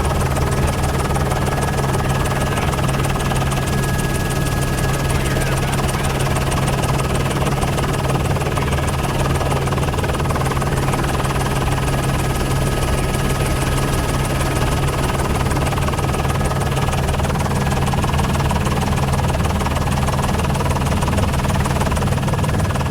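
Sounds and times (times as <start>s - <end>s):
helicopter rotor and turbine drone: 0.0s - 22.9s.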